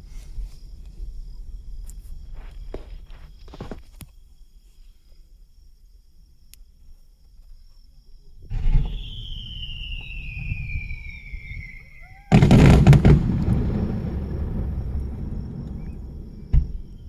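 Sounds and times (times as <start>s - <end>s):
firework bursts with rumbling echo: 8.5s - 17.0s
firework whistling: 8.5s - 17.0s.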